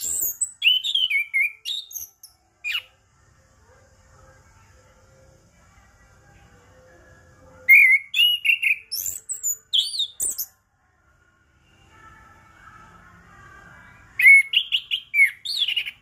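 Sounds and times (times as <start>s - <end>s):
thrush whistled song: 0.0s - 2.9s, 7.6s - 10.5s, 14.2s - 16.0s
faint background bird calls: 0.0s - 16.0s.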